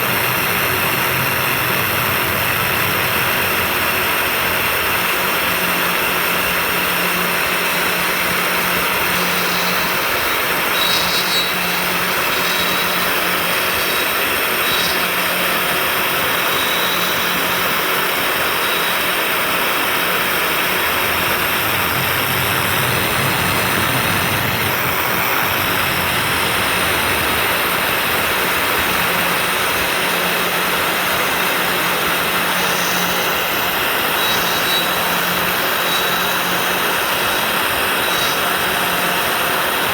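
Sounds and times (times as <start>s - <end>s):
low hum: 0.0s - 5.8s, 20.1s - 29.2s
router milling with suction: 0.0s - 39.9s.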